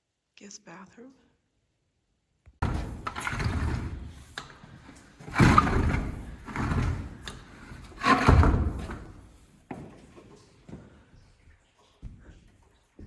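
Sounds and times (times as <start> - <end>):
loud bumps: 2.6 - 9.4
knocks and thuds of building work: 2.6 - 10.8.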